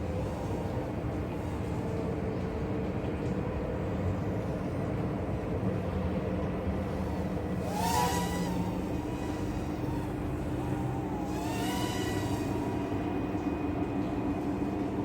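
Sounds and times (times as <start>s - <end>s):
quadcopter motors humming: 0.0s - 2.8s, 6.2s - 15.0s.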